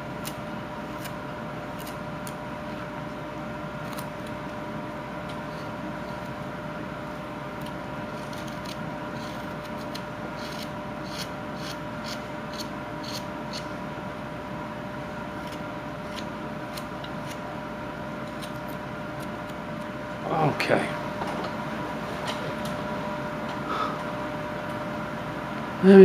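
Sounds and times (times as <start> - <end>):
steady background hum: 0.0 - 26.0
knife scraping wood: 7.6 - 13.7.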